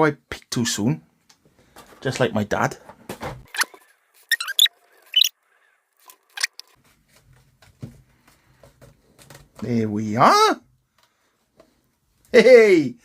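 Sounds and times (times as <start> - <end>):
small object clicking and scraping: 6.0 - 6.8.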